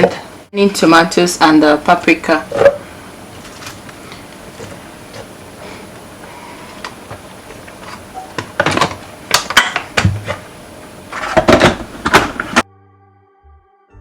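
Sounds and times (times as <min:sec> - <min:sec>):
containers and utensils clattering: 0:02.4 - 0:10.5, 0:11.1 - 0:12.6.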